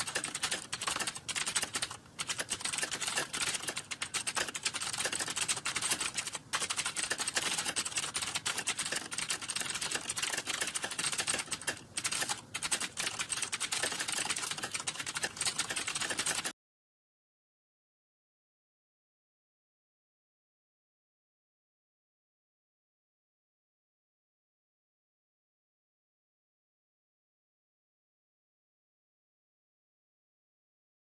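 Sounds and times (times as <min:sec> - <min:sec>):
fast typing on keyboard: 0:00.0 - 0:16.5.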